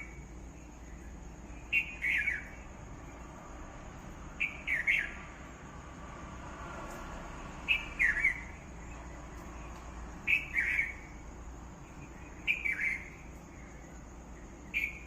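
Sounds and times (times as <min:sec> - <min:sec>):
bird chirping calls: 0:00.0 - 0:03.2, 0:04.4 - 0:05.4, 0:07.6 - 0:11.2, 0:11.8 - 0:15.0.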